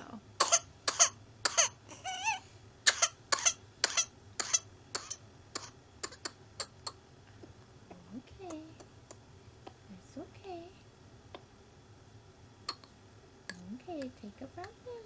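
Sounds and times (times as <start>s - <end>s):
child hacking coughs: 0.4s - 1.8s, 2.9s - 6.8s.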